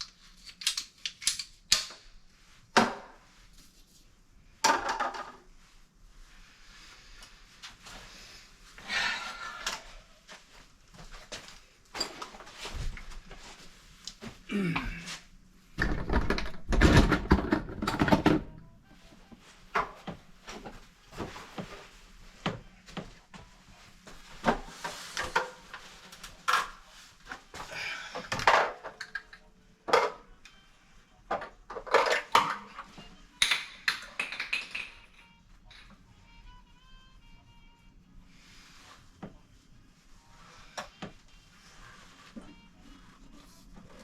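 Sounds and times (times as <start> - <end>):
hard objects knocking and clattering: 15.8 - 18.6.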